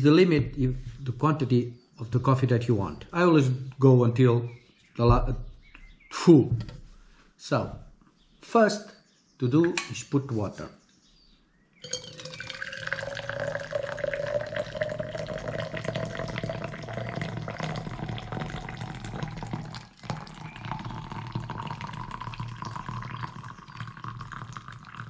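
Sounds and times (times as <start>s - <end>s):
water pouring into a chamber: 11.9s - 25.0s.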